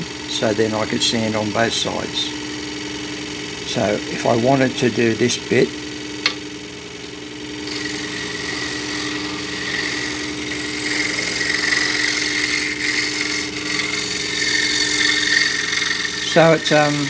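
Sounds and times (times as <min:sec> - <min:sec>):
scroll saw motor hum: 0:00.0 - 0:17.0
sanding strip rasping on wood: 0:07.7 - 0:17.0.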